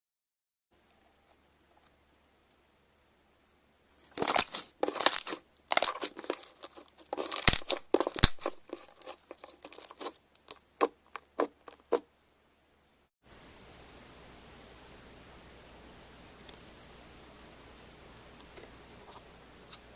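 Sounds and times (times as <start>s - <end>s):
slime squeezed crackling and popping: 4.2s - 12.0s.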